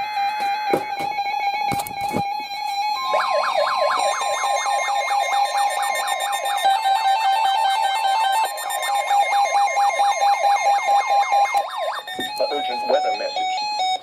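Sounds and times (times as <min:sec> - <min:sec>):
siren sweeping up and down: 0:00.0 - 0:14.0
steady alarm tone: 0:00.0 - 0:14.0
stepped electronic notes: 0:03.1 - 0:14.0.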